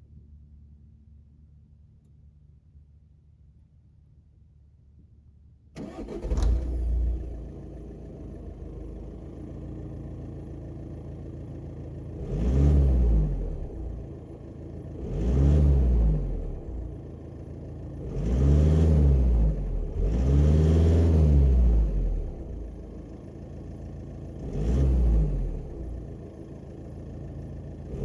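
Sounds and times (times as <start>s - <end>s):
diesel engine idling and revving: 5.8s - 28.0s.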